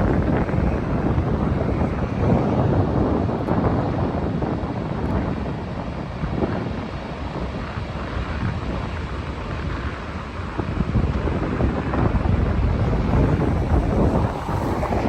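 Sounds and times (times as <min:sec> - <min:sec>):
ocean surf: 0:00.0 - 0:03.2, 0:10.2 - 0:15.0
wind buffeting microphone: 0:00.0 - 0:15.0.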